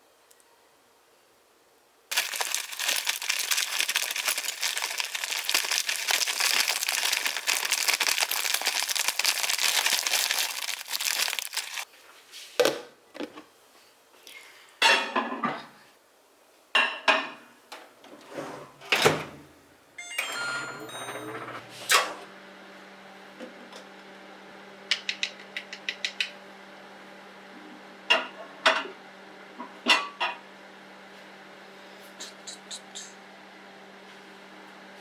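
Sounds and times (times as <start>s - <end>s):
crinkling crackling rustle: 2.1s - 11.9s.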